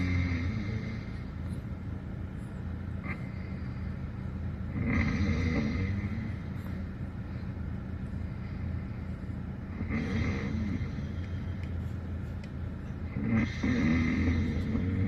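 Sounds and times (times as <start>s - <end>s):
dog snoring: 0.0s - 1.2s, 4.7s - 6.6s, 9.7s - 11.4s, 13.1s - 15.0s
steady low hum: 0.0s - 15.0s.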